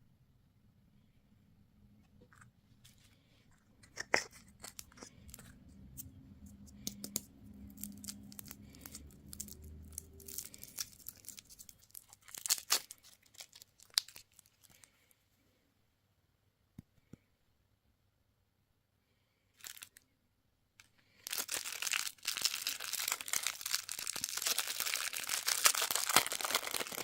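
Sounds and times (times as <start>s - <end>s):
packaging wrapper crinkling: 3.8s - 6.0s, 6.7s - 14.9s, 19.6s - 20.0s, 21.2s - 27.0s.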